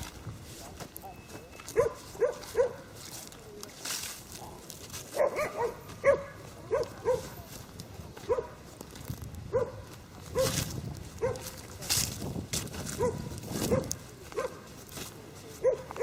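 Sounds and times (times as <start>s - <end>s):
dog barking: 1.7s - 2.9s, 5.1s - 7.5s, 8.3s - 8.6s, 9.5s - 10.6s, 11.2s - 11.6s, 13.0s - 14.7s, 15.6s - 16.0s.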